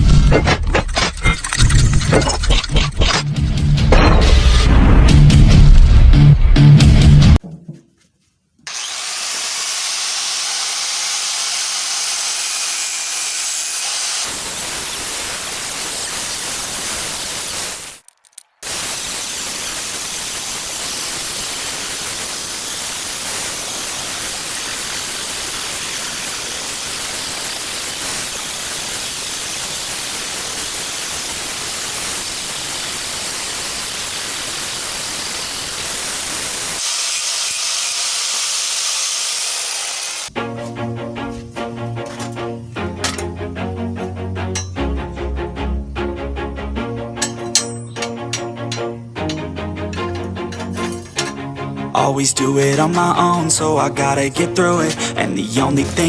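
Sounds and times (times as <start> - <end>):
steady rushing hiss: 18.6 - 36.8.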